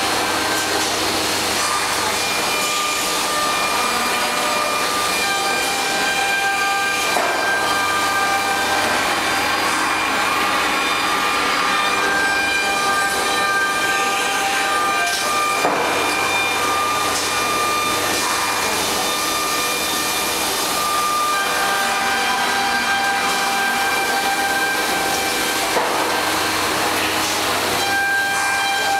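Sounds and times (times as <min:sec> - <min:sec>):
woodworking machine whining: 0:00.0 - 0:28.9.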